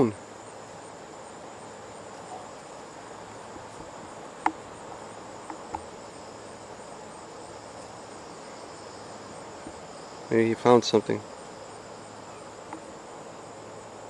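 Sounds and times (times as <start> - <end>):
crickets chirping: 0.0 - 14.0
soft ticks: 5.4 - 5.9, 12.7 - 12.9.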